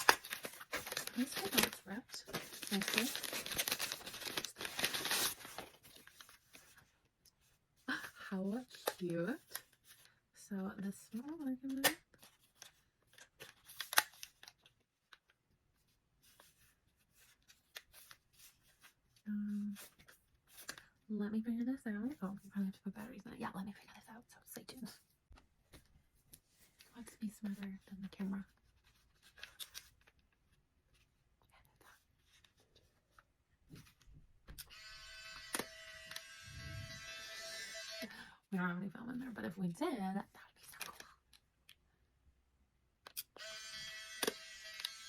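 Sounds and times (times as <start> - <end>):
packaging rustling and clicking: 0.0 - 6.6
camera motor whirring: 34.6 - 38.1, 43.4 - 45.0.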